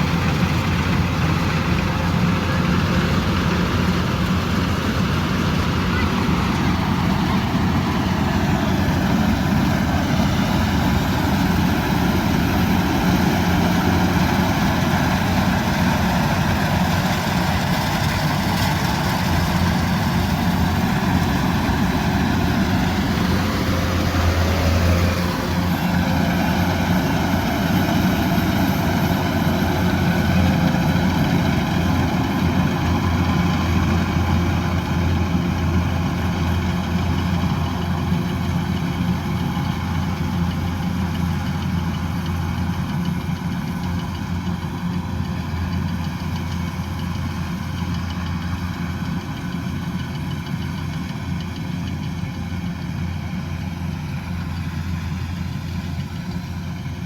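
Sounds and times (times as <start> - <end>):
diesel engine running under load: 0.0 - 57.0.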